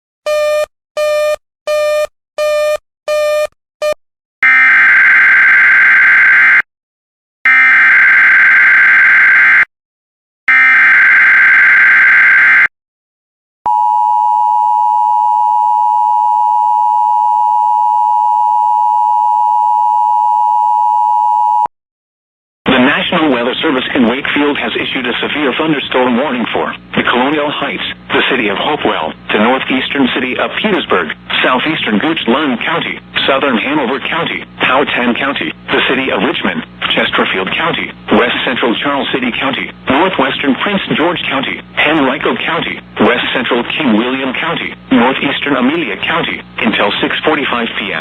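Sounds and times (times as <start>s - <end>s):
two-tone alert signal: 0.3s - 5.6s.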